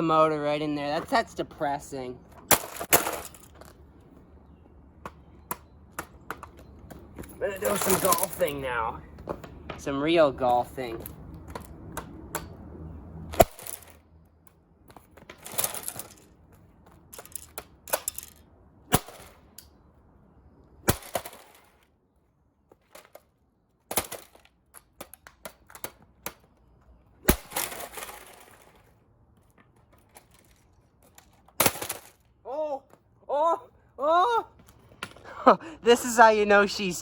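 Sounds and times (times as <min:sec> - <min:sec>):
breaking plastic clatter: 0:02.4 - 0:03.8, 0:15.2 - 0:16.4, 0:23.9 - 0:25.9, 0:27.3 - 0:28.9, 0:30.0 - 0:32.3
golf club smashing plastic: 0:27.2 - 0:28.8, 0:31.6 - 0:32.2.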